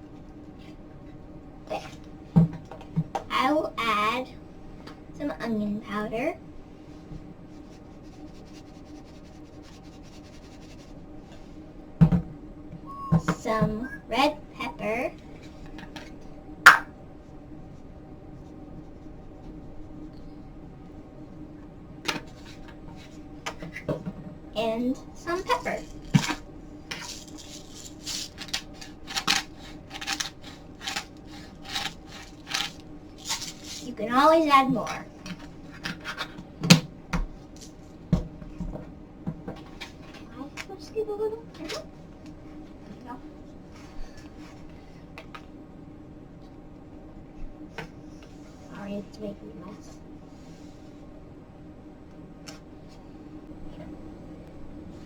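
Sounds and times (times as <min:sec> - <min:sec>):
pepper scratching into powder: 0:27.0 - 0:34.0.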